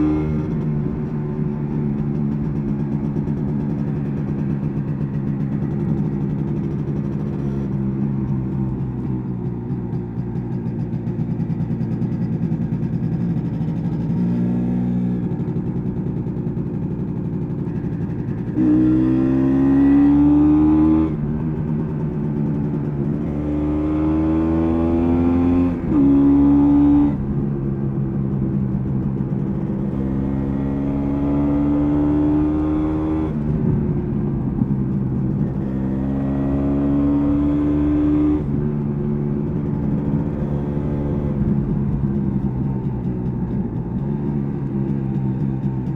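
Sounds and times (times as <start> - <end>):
two-stroke motorcycle engine: 0.0 - 45.9.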